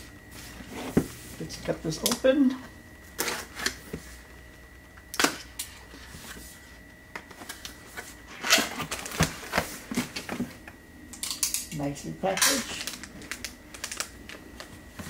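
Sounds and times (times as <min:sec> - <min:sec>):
packaging rustling and scraping: 0:05.6 - 0:10.6.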